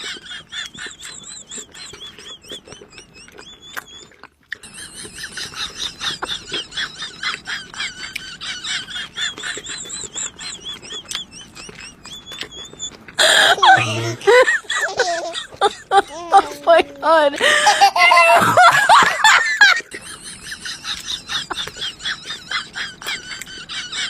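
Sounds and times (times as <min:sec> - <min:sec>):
small animals squeaking: 0:00.0 - 0:17.3, 0:20.7 - 0:24.0.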